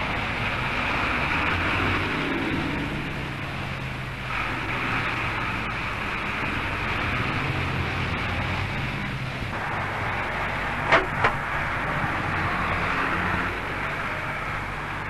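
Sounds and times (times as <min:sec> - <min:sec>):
excavator diesel engine running: 0:00.0 - 0:15.0
sharp knocks: 0:10.9 - 0:11.4.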